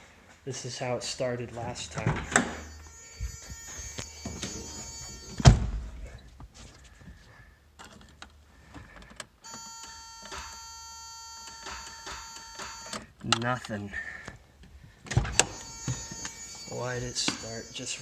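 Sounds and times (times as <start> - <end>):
high-pitched tone: 2.3 - 5.8, 9.5 - 13.0, 15.3 - 18.0
starter solenoid click: 9.5 - 13.0.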